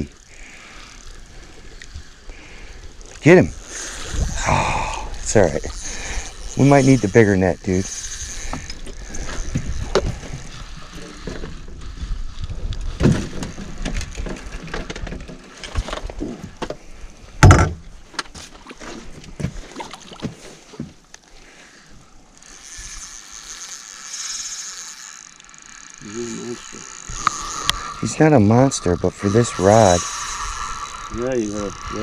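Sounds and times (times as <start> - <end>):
loud thump: 17.4 - 17.8
knocks and bumps in a boat: 17.4 - 18.5.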